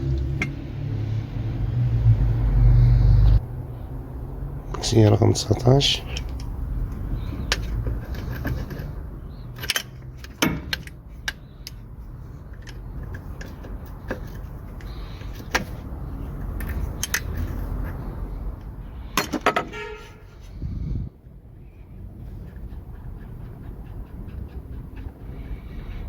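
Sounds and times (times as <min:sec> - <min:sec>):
ratchet clicks: 0:16.6 - 0:17.6.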